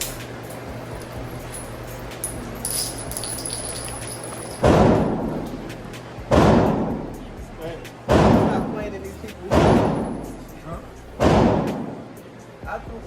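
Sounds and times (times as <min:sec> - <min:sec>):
loud echoing gunshot: 0:06.3 - 0:07.0, 0:08.1 - 0:08.7, 0:09.5 - 0:10.1, 0:11.2 - 0:12.0.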